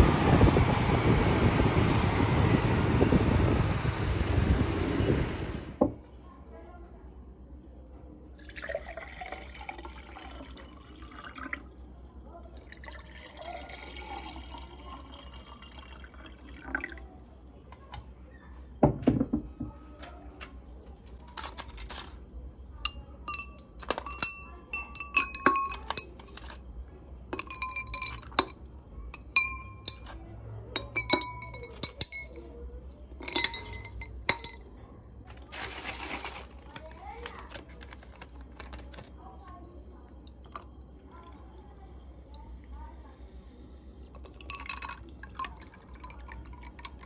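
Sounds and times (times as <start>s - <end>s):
glassware clinking: 22.8s - 26.7s, 27.3s - 34.8s, 44.2s - 47.0s.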